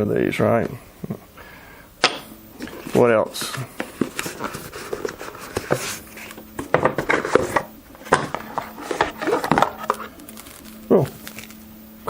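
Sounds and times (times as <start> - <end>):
rummaging in box of items: 2.8 - 11.7.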